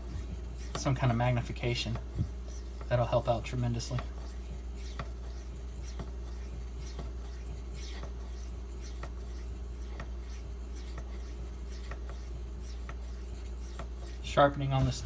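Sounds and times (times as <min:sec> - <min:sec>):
knife scraping on whetstone: 0:00.0 - 0:15.0.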